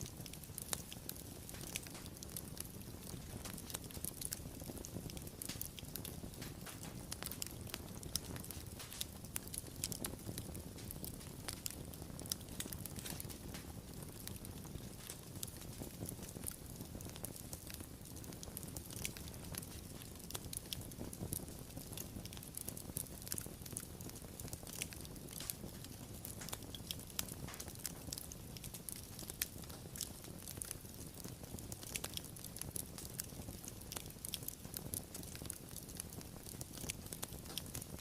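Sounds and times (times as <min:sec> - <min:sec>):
wood fire crackling: 0:00.0 - 0:38.0.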